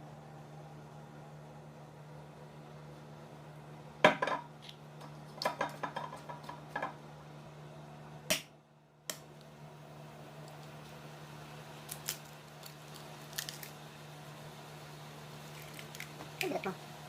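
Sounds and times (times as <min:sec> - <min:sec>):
steady low hum: 0:00.0 - 0:17.0
dish being set down: 0:04.1 - 0:04.5.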